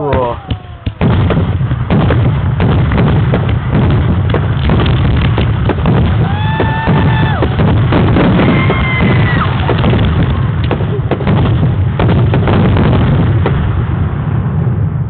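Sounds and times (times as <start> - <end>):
fireworks bursts and booms: 0.0 - 15.0.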